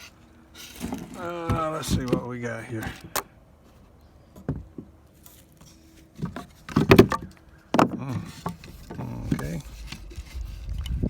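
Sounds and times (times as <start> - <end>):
rustling: 5.1 - 11.0.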